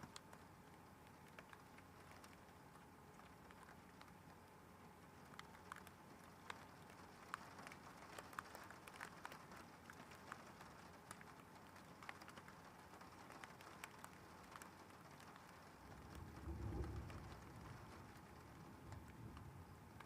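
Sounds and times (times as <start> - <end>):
raindrops ticking on hard surface: 0.0 - 20.0
soft steady hiss: 0.0 - 20.0.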